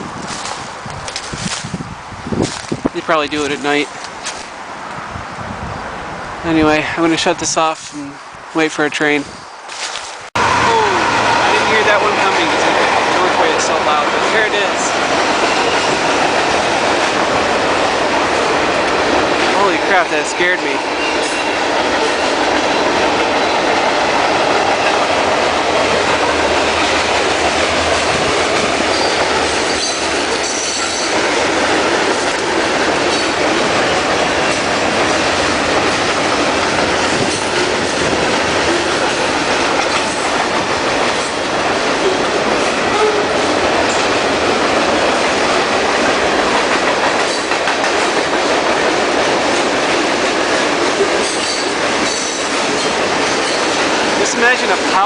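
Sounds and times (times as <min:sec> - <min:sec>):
freight train rolling on rails: 0:00.0 - 0:55.0
train wheel squeals: 0:28.9 - 0:31.2, 0:51.2 - 0:53.8.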